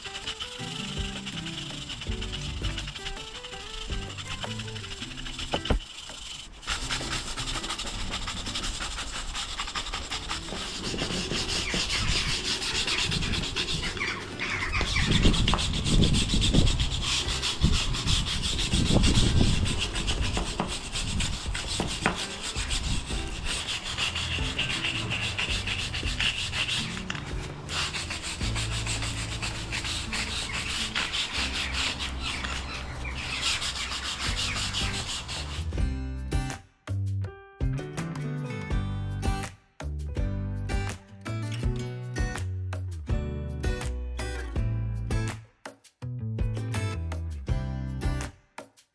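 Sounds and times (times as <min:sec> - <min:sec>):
wire brush scraping paving: 0:00.0 - 0:35.8.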